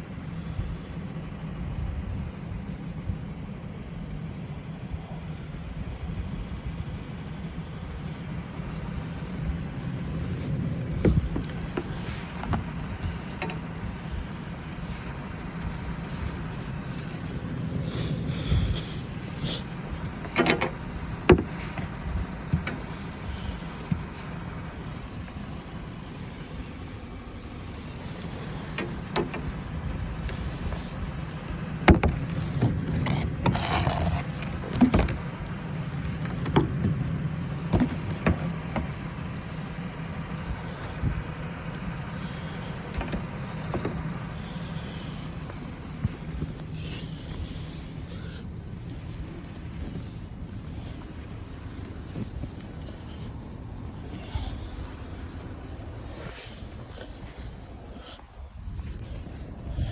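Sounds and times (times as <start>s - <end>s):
vehicle engine running: 0.0s - 59.9s
short scraping noises: 27.8s - 39.1s.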